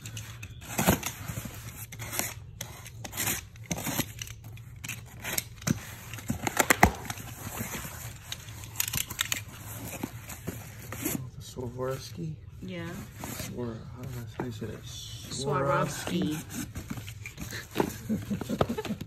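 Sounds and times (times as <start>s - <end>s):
packaging tearing and crinkling: 0.5s - 10.3s.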